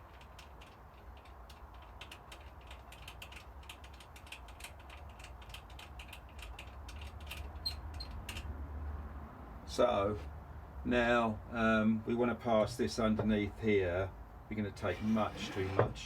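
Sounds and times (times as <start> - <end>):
ratchet mechanism clicking: 0.0 - 8.5.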